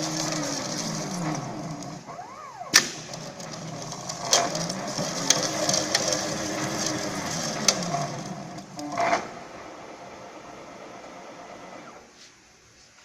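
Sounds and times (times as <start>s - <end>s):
winding machine motor: 0.0s - 12.0s
machine clicks: 2.8s - 9.4s.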